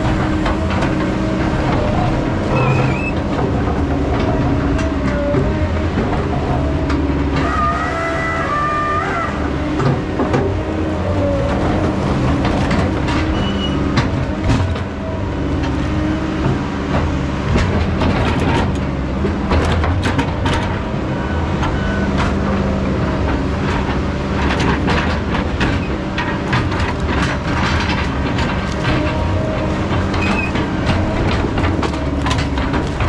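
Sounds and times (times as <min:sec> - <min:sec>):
diesel engine running: 0:00.0 - 0:33.0
metallic clanks and knocks: 0:23.2 - 0:33.0.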